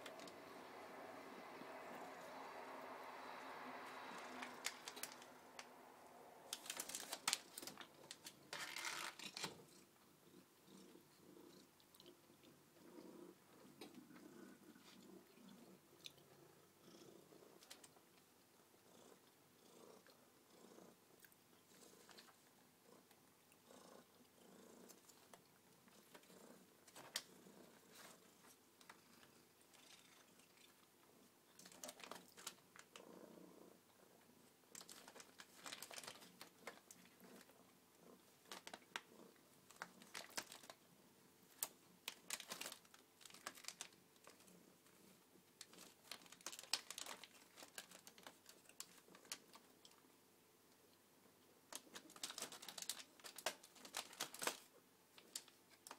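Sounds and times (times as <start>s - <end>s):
cat purring: 0.0s - 50.2s
crinkling and rustling clicks: 4.1s - 5.7s, 6.5s - 9.8s, 24.9s - 27.3s, 31.5s - 33.1s, 34.7s - 37.6s, 38.2s - 39.1s, 39.7s - 40.8s, 41.5s - 50.0s, 51.7s - 55.9s.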